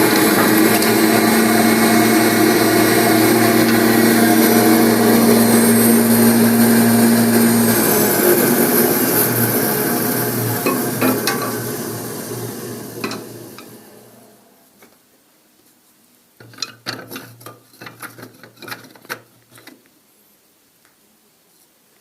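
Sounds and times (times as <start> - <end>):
milling machine winding down: 0.0 - 14.4
low hum: 0.0 - 14.6
clicks and clatter: 16.4 - 19.9.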